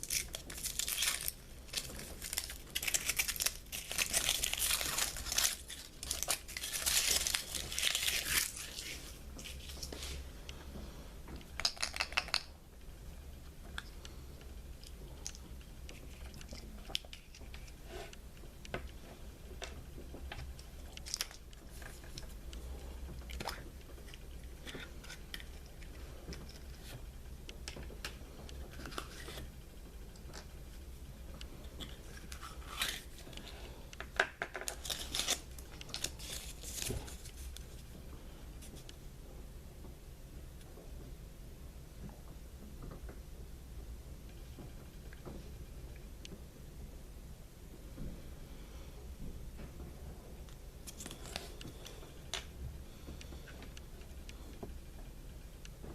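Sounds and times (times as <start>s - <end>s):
wrapper crinkling: 0.0s - 10.2s, 34.6s - 37.5s.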